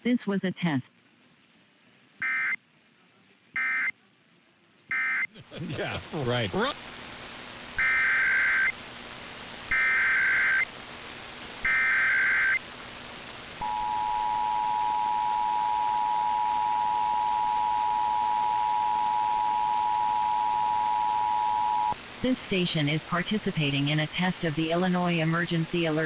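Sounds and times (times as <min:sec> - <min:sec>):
warbling data tones: 0:07.8 - 0:08.8, 0:09.7 - 0:10.7, 0:11.6 - 0:12.7
two-tone attention signal: 0:13.6 - 0:22.0.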